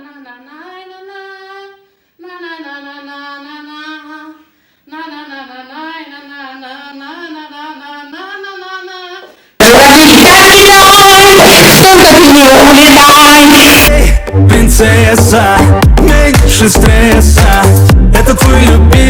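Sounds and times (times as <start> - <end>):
woman singing wordless tune: 0.0 - 9.4.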